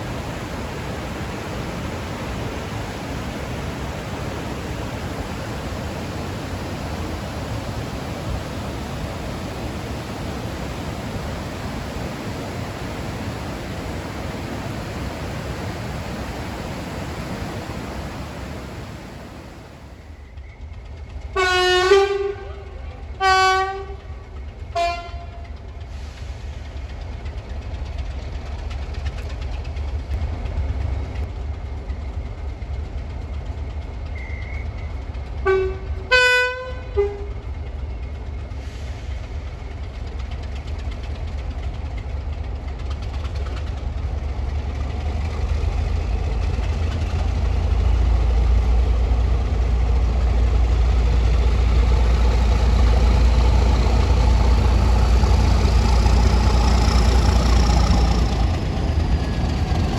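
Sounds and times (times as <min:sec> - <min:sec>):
diesel locomotive engine rumbling: 0:00.0 - 0:59.9
locomotive horn notes: 0:21.4 - 0:24.1, 0:24.7 - 0:25.5, 0:35.4 - 0:37.5.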